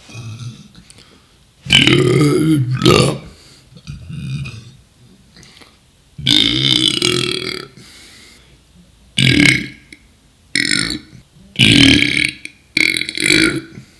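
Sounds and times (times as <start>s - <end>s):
man burping loudly: 1.7s - 4.8s, 6.2s - 7.8s, 9.2s - 10.0s, 10.6s - 13.8s.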